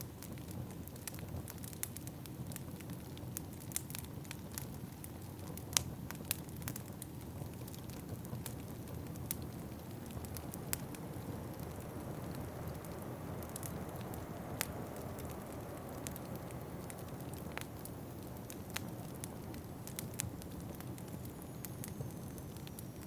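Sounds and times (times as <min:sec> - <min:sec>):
wood fire crackling: 0:00.0 - 0:23.0
steady low rumble: 0:09.4 - 0:22.9.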